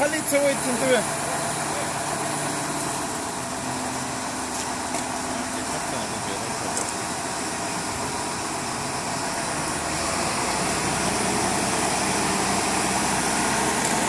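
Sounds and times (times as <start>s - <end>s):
heavy vehicle engine running: 0.0s - 14.0s.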